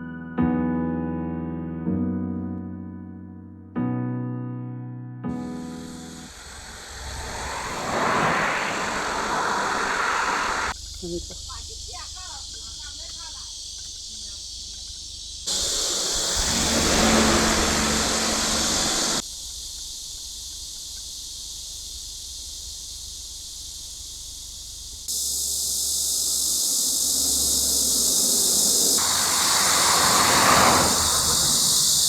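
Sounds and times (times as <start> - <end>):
cicadas shrilling: 5.6 - 32.0
low rushing noise: 5.8 - 10.8, 15.5 - 19.2, 26.7 - 32.0.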